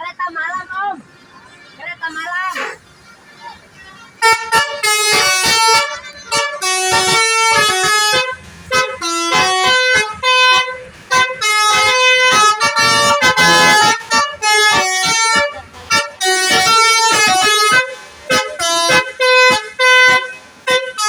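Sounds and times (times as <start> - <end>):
multi-tone musical air horn: 4.2 - 21.0.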